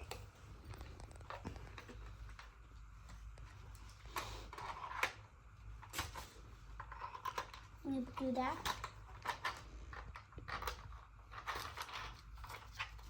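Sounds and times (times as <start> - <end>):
plastic parts clicking and knocking: 5.8 - 13.0.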